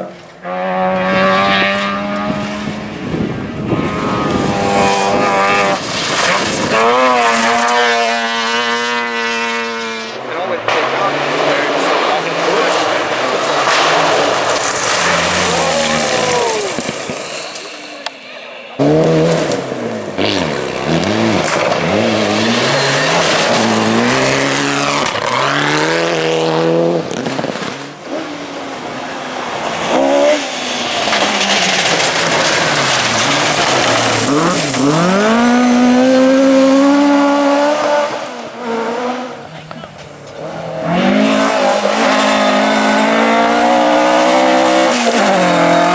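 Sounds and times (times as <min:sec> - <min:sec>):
rally car engines revving: 0:00.0 - 0:45.9.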